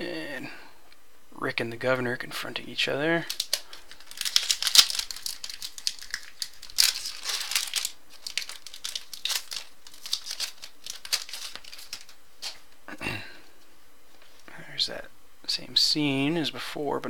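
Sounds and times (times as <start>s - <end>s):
wrapper crinkling and tearing: 3.1s - 12.8s
cards being handled: 3.2s - 12.8s.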